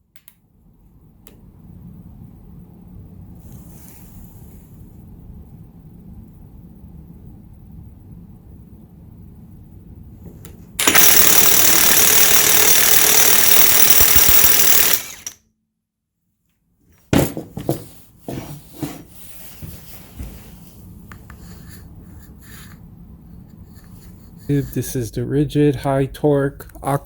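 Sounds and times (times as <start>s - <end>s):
impact wrench hammering: 10.8s - 15.4s.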